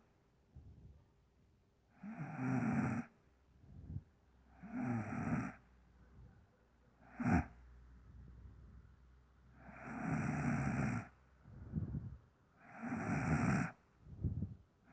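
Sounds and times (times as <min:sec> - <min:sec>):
soft breaths: 0:00.0 - 0:01.2, 0:01.9 - 0:14.9
woman snoring heavily: 0:02.0 - 0:03.1, 0:04.6 - 0:05.6, 0:07.0 - 0:07.6, 0:09.7 - 0:11.1, 0:12.8 - 0:13.8.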